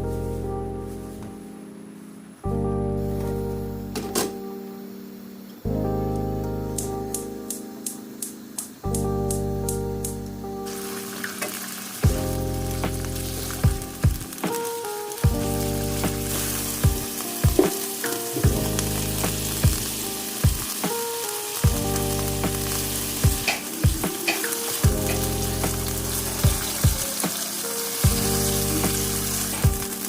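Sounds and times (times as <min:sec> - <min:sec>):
food sizzling in a pan: 0:10.6 - 0:30.0.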